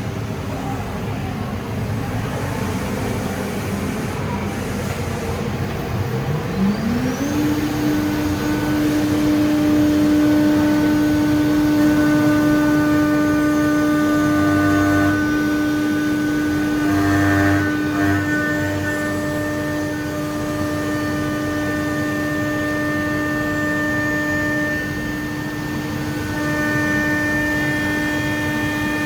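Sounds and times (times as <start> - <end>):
machine spindle whine: 0.0 - 29.0.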